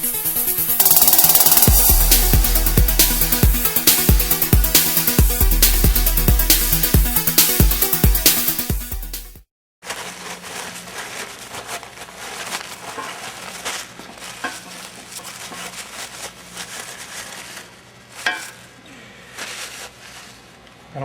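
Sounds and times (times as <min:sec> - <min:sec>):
rustling: 0:09.8 - 0:21.0.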